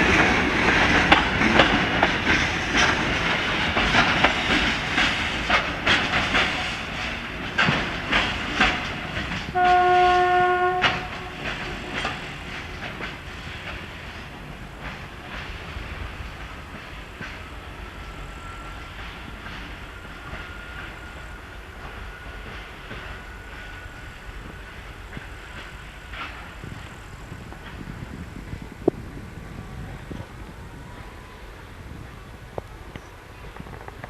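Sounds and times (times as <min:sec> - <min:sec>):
train wheels clattering over rail joints: 0:00.0 - 0:29.2, 0:32.6 - 0:34.0
train horn blast: 0:09.5 - 0:11.7.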